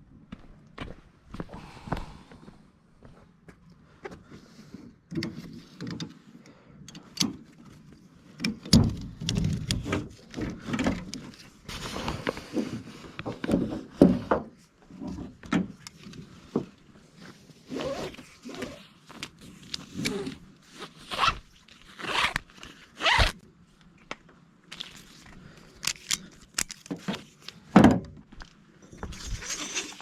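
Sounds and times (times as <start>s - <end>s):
gear scraping: 29.1s - 30.0s.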